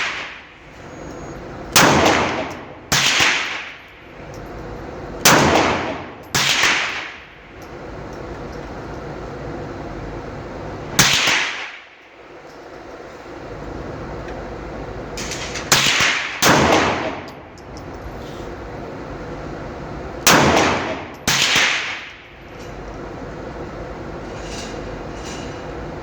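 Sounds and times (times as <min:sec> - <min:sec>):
pistol shots with echo: 0:01.8 - 0:03.8, 0:05.2 - 0:07.2, 0:11.0 - 0:11.9, 0:15.2 - 0:17.4, 0:20.3 - 0:22.2.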